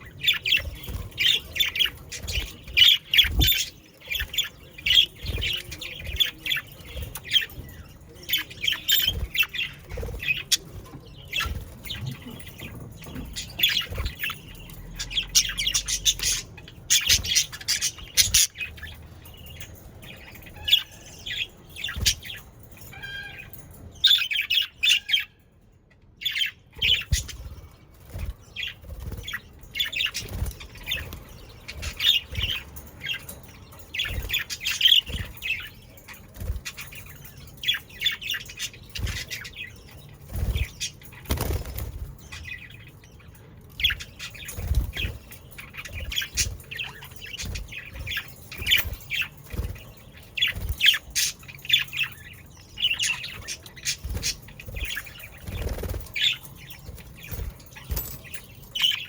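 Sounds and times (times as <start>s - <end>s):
budgerigars chattering and chirping: 0.0s - 25.4s, 26.2s - 59.0s
wings fluttering: 26.8s - 32.8s, 40.1s - 42.4s, 44.4s - 52.1s, 52.9s - 59.0s.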